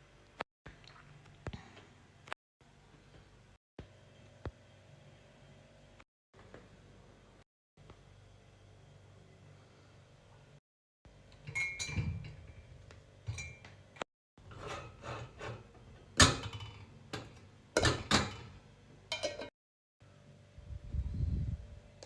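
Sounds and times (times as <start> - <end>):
kitchen knocks and clinks: 11.4 - 12.6, 13.3 - 13.8, 14.6 - 19.5.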